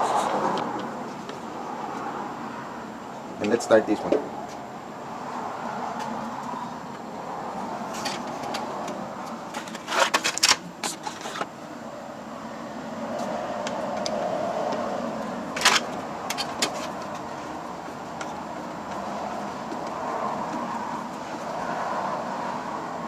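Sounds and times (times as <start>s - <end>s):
steady background hum: 0.0s - 23.0s
hand tool tightening screws: 9.5s - 11.5s.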